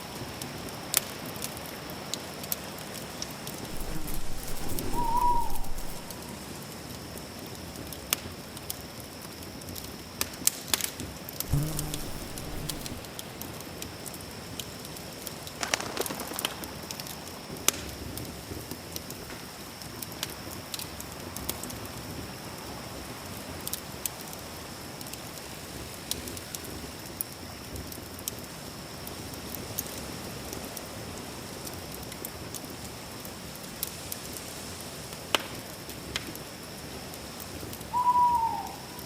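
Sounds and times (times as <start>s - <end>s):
campfire crackling and popping: 3.7s - 6.2s, 11.7s - 13.1s.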